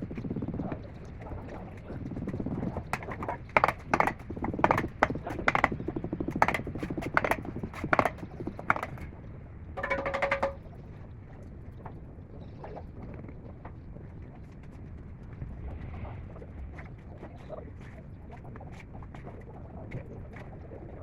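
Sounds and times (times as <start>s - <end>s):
sharp knocks or taps: 3.0s - 9.1s, 9.8s - 10.6s.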